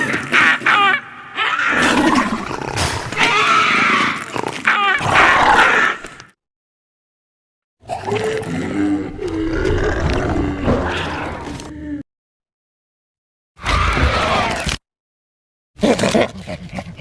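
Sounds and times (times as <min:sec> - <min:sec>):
dinosaur shrieking and growling: 0:00.0 - 0:06.2, 0:07.8 - 0:11.9, 0:13.6 - 0:14.8.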